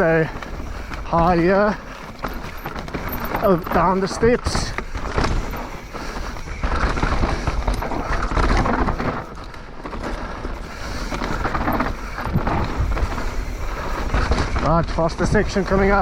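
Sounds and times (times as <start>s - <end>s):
bike knocks and rattles: 0.0s - 16.0s
tyre noise on dirt: 0.0s - 16.0s
wind on microphone: 10.5s - 16.0s.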